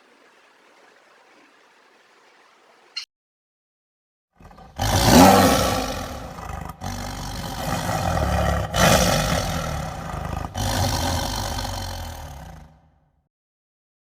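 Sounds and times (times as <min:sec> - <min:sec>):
large animal roaring: 0:04.4 - 0:12.9.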